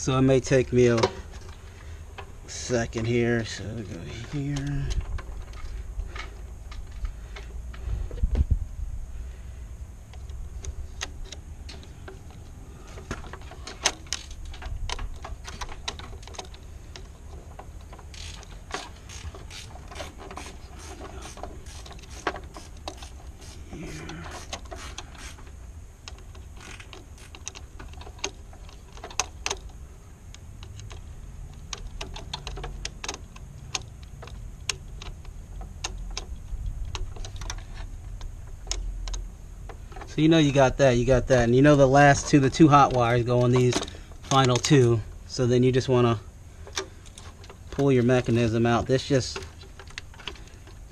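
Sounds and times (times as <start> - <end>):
low background hum: 0.0 - 50.9
hand tool clicking and ratcheting: 13.1 - 25.5, 26.1 - 29.8.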